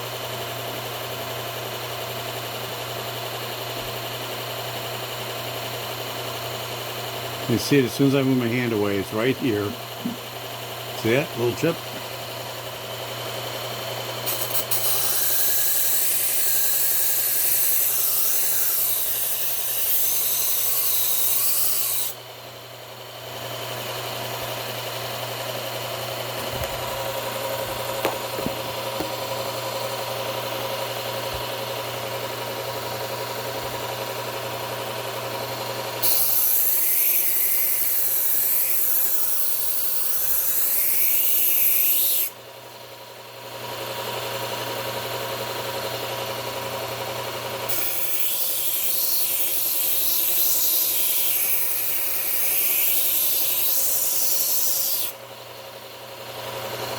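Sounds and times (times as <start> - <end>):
knife grinding on belt sharpener: 14.2 - 22.2, 36.0 - 42.4, 47.7 - 55.2.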